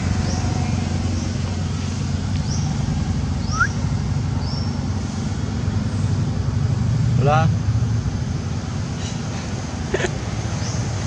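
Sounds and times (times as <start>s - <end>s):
road traffic rumble: 0.0s - 11.0s
high rising chirps: 3.4s - 3.8s.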